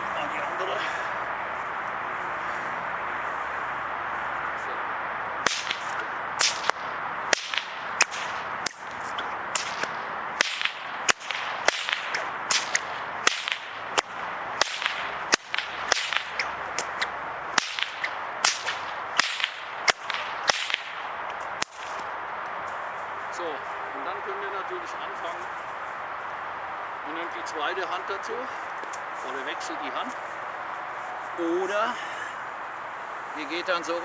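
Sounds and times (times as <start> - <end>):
whoosh of swinging whip: 5.4 - 21.0
bullwhip cracking: 5.4 - 22.2.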